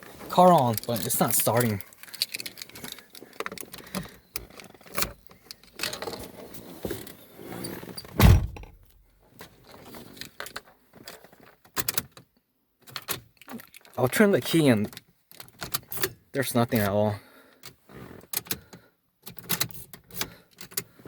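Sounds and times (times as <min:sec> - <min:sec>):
car keys jangling: 0:00.5 - 0:06.0
small handling clicks: 0:00.6 - 0:06.0
heavy thump: 0:08.2 - 0:08.8.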